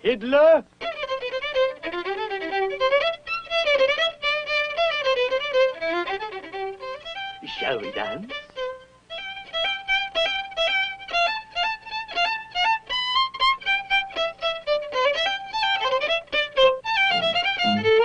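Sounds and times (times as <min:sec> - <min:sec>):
fiddle playing a fast dance tune: 0:00.0 - 0:18.0
lower fiddle notes: 0:00.8 - 0:18.0.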